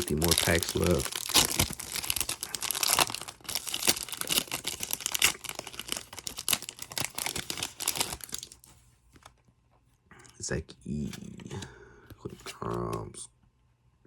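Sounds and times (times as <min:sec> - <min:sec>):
wrappers crinkling and tearing: 0:00.0 - 0:08.7.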